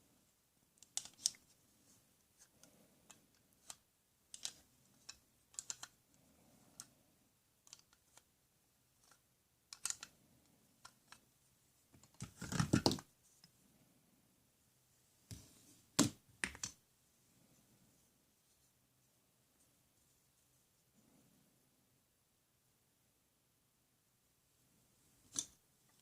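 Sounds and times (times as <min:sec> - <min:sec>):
clicks and taps of small objects: 0:09.0 - 0:10.1, 0:11.9 - 0:13.1, 0:16.0 - 0:16.8.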